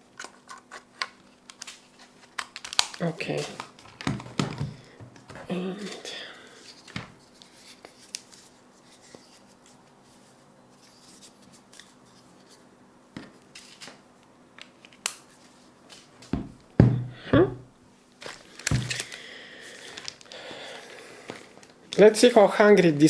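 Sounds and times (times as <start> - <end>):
loud thumps: 16.4 - 17.7.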